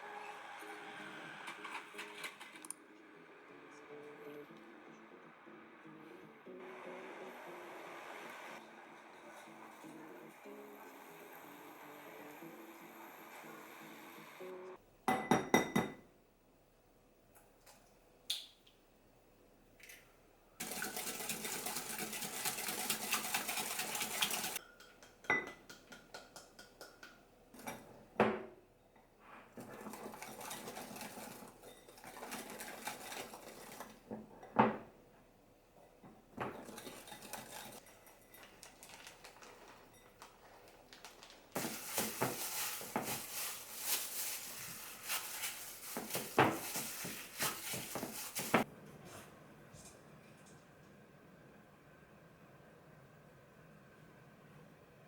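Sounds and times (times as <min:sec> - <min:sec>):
dishes and utensils clinking: 0:20.6 - 0:34.9, 0:36.4 - 0:40.5.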